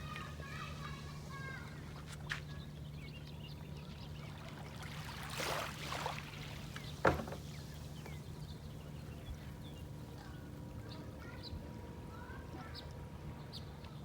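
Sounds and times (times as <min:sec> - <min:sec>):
small waves washing on beach: 0:04.2 - 0:07.9.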